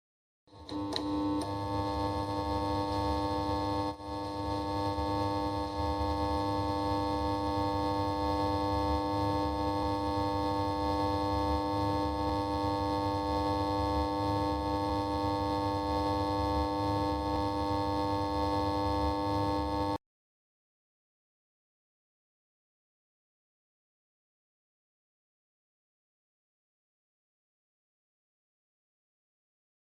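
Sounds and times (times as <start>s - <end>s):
neon light humming: 0.6s - 20.0s.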